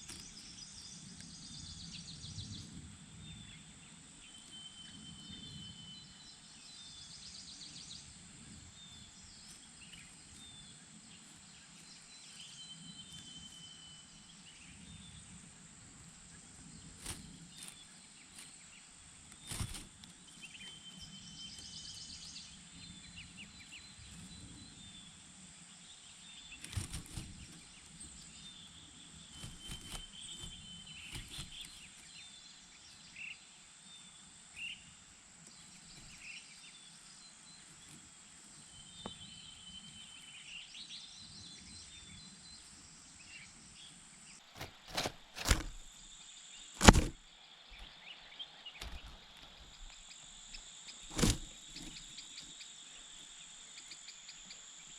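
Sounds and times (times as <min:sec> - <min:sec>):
bird chirps: 0:00.0 - 0:15.2, 0:17.0 - 0:25.2, 0:26.0 - 0:34.9
sharp knocks: 0:46.8 - 0:47.2.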